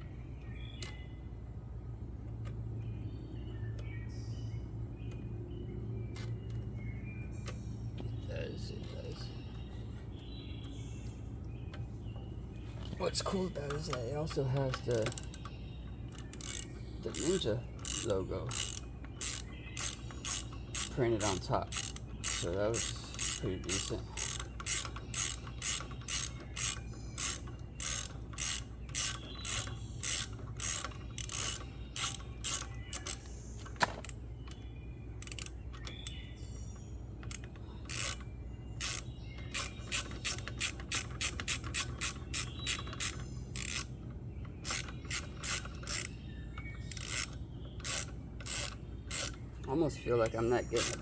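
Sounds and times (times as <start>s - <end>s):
ratchet wrench clicking: 14.7s - 15.4s, 16.1s - 34.6s, 35.2s - 36.1s, 37.2s - 49.4s, 50.2s - 51.0s.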